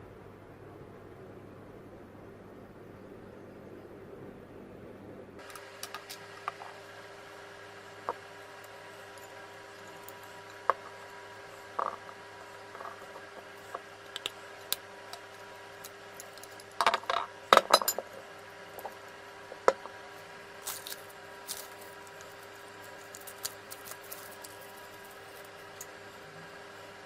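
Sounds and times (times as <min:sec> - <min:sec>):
faint steady hum: 0:00.0 - 0:27.0.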